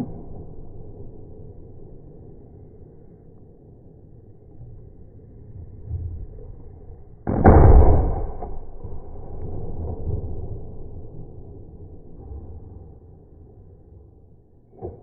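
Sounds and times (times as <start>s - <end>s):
gunshot: 7.3s - 10.7s.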